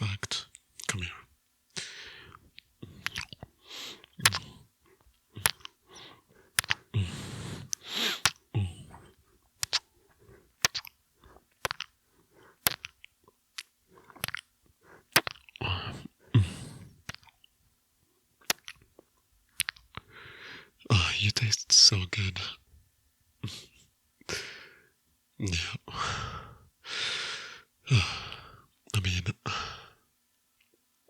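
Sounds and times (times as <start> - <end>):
wet lip smacks: 1.8 - 6.9, 7.5 - 15.6, 17.0 - 17.5, 18.4 - 20.1
heavy breaths: 1.8 - 10.6, 13.8 - 17.0, 20.0 - 20.8, 23.4 - 24.9, 25.9 - 28.7.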